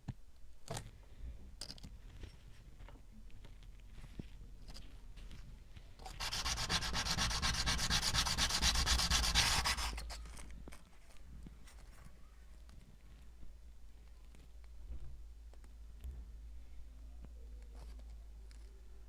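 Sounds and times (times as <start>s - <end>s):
sanding abrasive rubbing: 6.2s - 10.0s.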